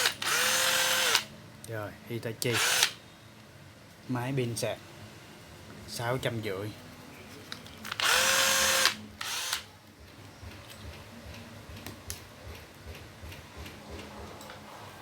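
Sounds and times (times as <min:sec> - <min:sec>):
cordless drill motor whine: 0:00.0 - 0:01.3, 0:02.5 - 0:02.9, 0:08.0 - 0:09.6.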